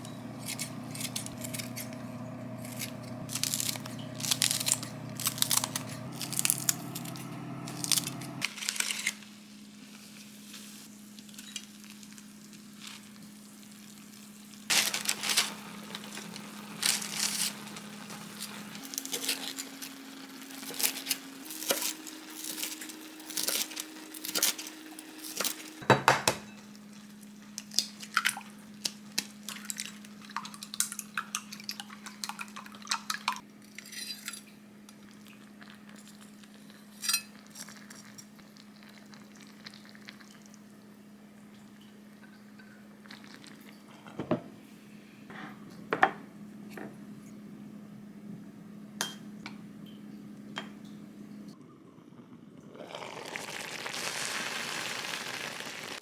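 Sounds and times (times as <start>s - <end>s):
dishes and utensils clattering: 25.8s - 26.7s.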